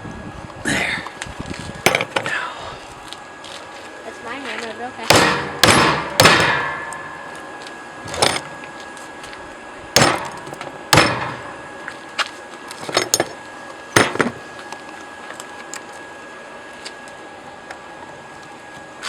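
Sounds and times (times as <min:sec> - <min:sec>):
hammer striking hot steel: 0:05.1 - 0:07.3, 0:10.0 - 0:11.5.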